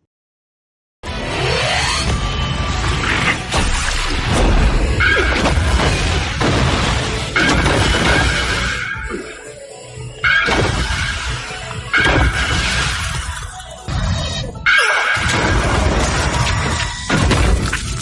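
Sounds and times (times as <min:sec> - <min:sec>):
music with electronic effects: 0:01.0 - 0:18.0
crashes and booms: 0:03.6 - 0:08.8.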